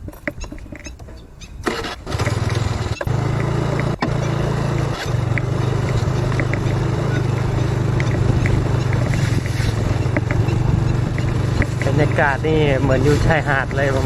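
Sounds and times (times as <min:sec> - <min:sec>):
motorcycle engine starting and idling: 0:01.6 - 0:14.0
faint short chirps and ticks: 0:05.2 - 0:11.9.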